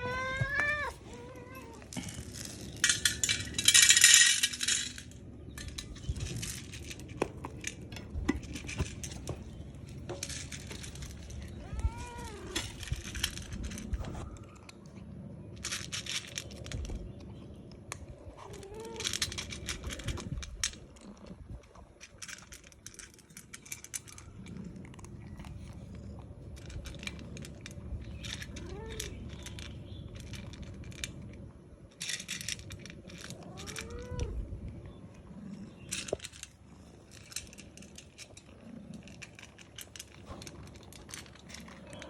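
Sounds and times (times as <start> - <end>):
cat meowing: 0.0 - 1.9, 11.5 - 12.7
crackling and crinkling: 0.0 - 42.0.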